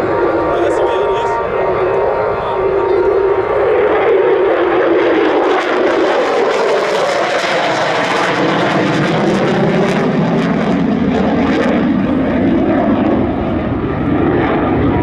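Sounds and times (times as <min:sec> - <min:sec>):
fighter jet engine roaring: 0:00.0 - 0:15.0.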